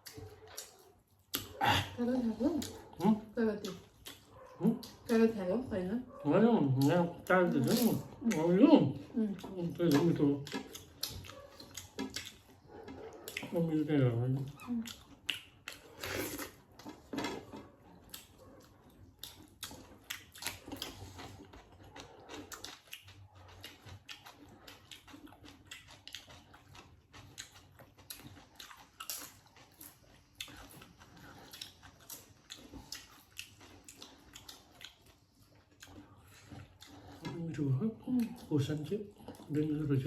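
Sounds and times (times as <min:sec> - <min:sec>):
people chewing food: 0:00.0 - 0:40.0.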